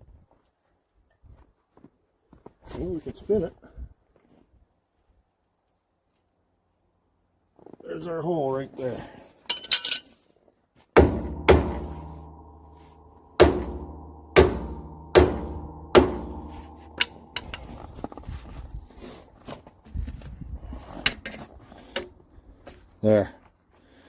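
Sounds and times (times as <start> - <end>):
light metal clinks and taps: 9.5 - 10.0, 15.9 - 18.0
heavy blows on steel ringing: 11.0 - 19.0.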